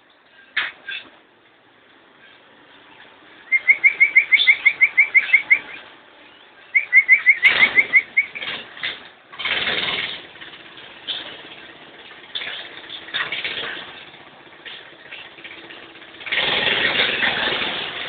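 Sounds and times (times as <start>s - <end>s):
lovebirds chirping rapidly: 2.3s - 8.6s
wings flapping: 7.1s - 18.0s.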